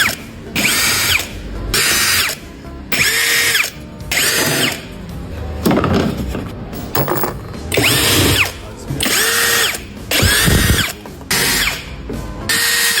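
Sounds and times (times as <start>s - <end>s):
power tool whirring bursts: 0.0s - 2.4s, 3.0s - 4.9s, 7.7s - 11.9s, 12.5s - 13.0s.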